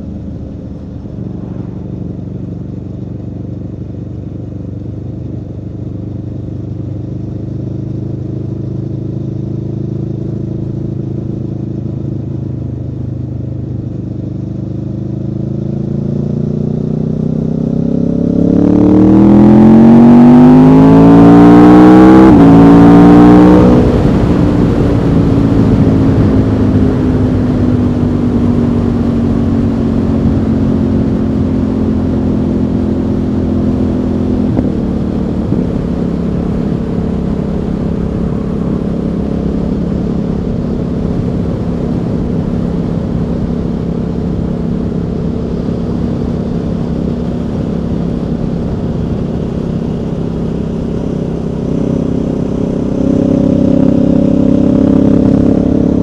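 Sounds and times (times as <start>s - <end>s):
motorcycle engine accelerating: 0.0s - 56.0s
wind rushing over microphone: 1.0s - 2.6s, 33.7s - 50.2s.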